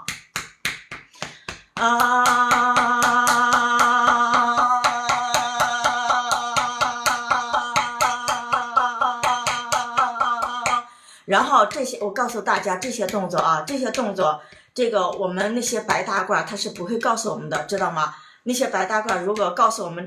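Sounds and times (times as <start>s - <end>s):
person holding long ahhh: 1.3s - 11.3s.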